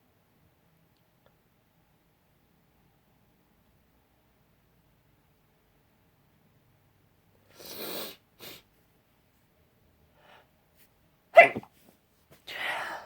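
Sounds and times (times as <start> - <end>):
woman stifled sneeze: 11.4 - 11.7.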